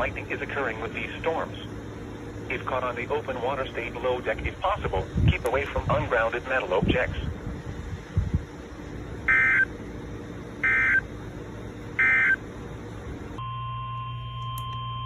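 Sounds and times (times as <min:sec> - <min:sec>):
low hum: 0:00.0 - 0:15.0
screeching data bursts: 0:09.2 - 0:09.7, 0:10.6 - 0:11.1, 0:12.0 - 0:12.4
steady high tone: 0:10.6 - 0:11.1.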